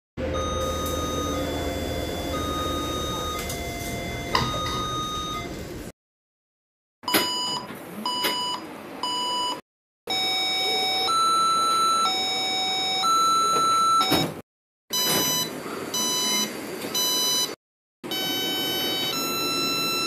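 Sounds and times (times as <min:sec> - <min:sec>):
two-note alternating tone: 0:00.2 - 0:05.5.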